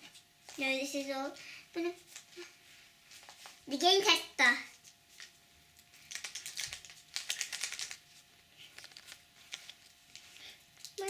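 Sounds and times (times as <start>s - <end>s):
plastic toy clicks and rattles: 6.1s - 8.0s.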